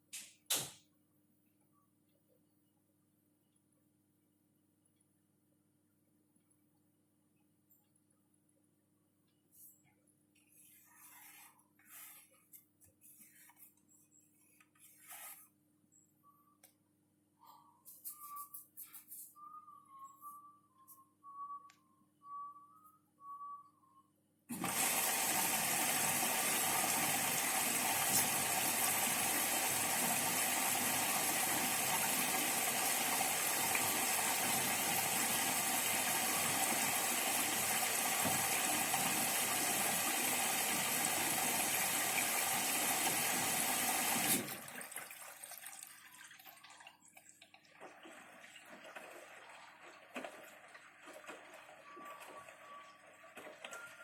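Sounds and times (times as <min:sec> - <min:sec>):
soft irregular sounds: 0:06.3 - 0:22.0
water rushing into washing machine: 0:24.5 - 0:54.0.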